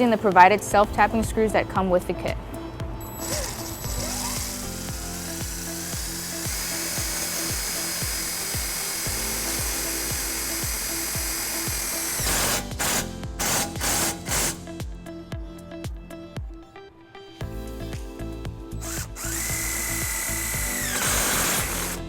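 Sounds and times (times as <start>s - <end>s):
power drill driving screws: 3.1s - 14.6s, 18.8s - 22.0s.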